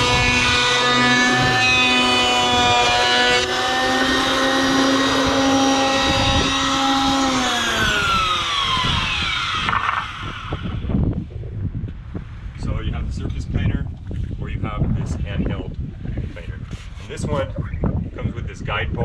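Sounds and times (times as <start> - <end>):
planer motor whining and winding down: 0.0 - 11.1.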